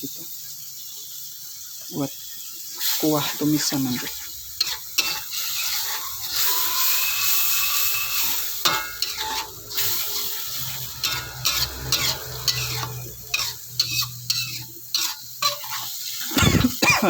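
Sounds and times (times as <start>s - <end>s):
spice paste sizzling in a pan: 0.0s - 17.0s
spatula scraping and clicking on pan: 4.1s - 16.3s.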